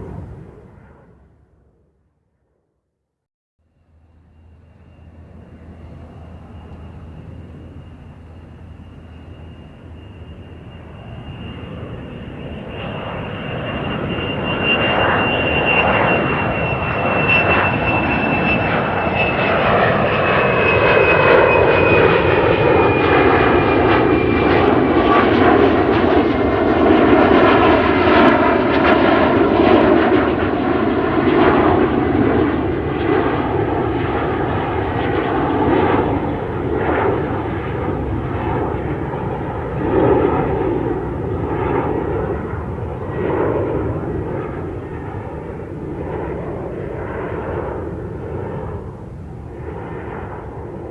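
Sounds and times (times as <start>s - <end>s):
airplane flying past: 0.0s - 2.8s, 3.6s - 50.9s
high whine falling in pitch: 3.6s - 29.4s.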